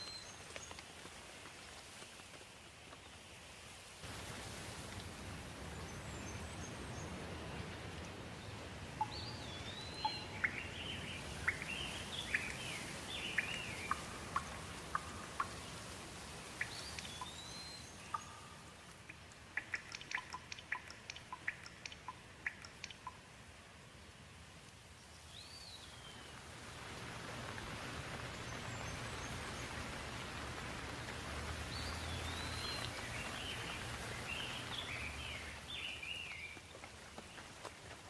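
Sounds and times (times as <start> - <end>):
rain hiss: 0.0 - 38.0
songbird singing whistles: 9.0 - 14.2, 16.6 - 18.6, 31.7 - 36.6.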